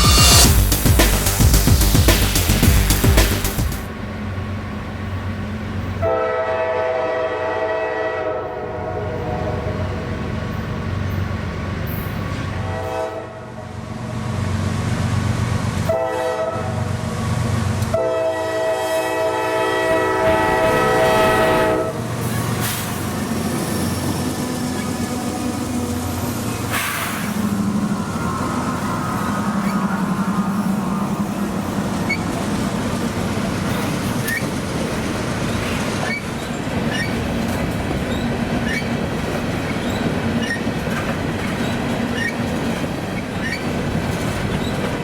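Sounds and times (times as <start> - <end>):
train horn blasts: 6.0 - 9.9, 12.6 - 13.8, 15.8 - 16.9, 17.9 - 22.3
diesel locomotive rumble: 13.8 - 45.0.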